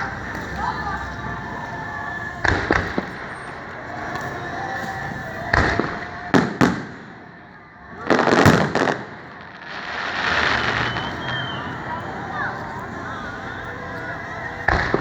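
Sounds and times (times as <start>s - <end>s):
aerial fireworks bangs and pops: 2.4s - 3.5s, 5.5s - 7.1s.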